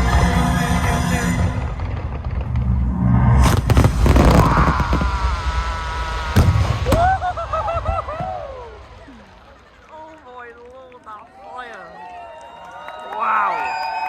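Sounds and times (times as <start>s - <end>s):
fireworks booming: 0.0s - 10.2s
sharp firework bangs: 1.4s - 9.8s.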